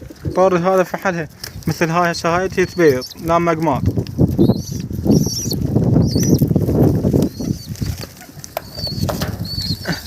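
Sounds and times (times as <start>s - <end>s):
pigeon wings fluttering: 3.8s - 10.0s.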